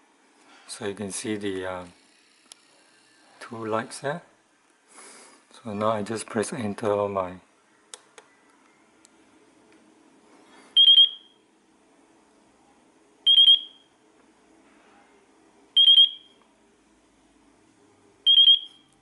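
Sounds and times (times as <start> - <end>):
radio transmitter high-pitched beeps: 13.3 - 13.8, 18.3 - 18.8.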